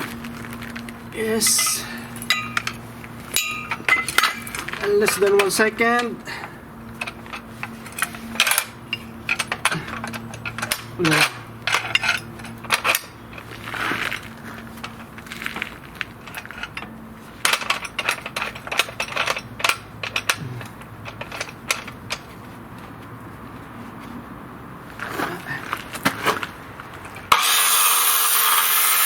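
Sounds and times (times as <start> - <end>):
steel pipes clinking: 0.5 - 22.2.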